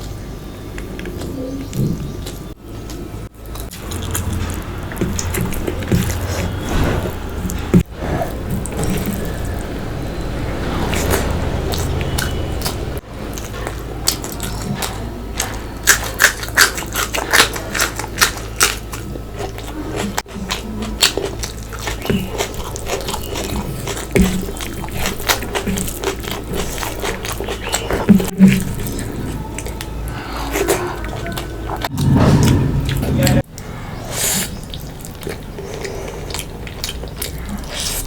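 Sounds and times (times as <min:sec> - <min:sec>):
person chewing crunchy food: 0:00.0 - 0:33.4, 0:34.1 - 0:38.0
steady low hum: 0:00.0 - 0:38.0.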